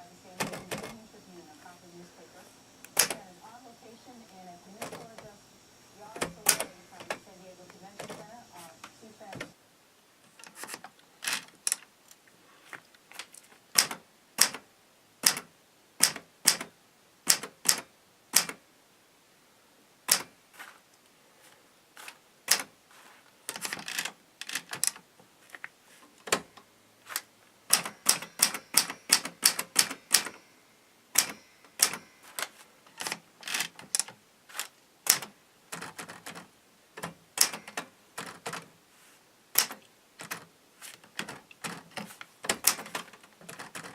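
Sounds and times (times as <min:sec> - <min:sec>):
manual typewriter typing: 0:00.0 - 0:05.4, 0:06.0 - 0:09.5, 0:10.4 - 0:11.9, 0:13.1 - 0:14.6, 0:15.2 - 0:18.6, 0:20.1 - 0:20.3, 0:22.0 - 0:22.7, 0:23.5 - 0:25.0, 0:26.2 - 0:30.5, 0:31.1 - 0:38.7, 0:39.5 - 0:43.9.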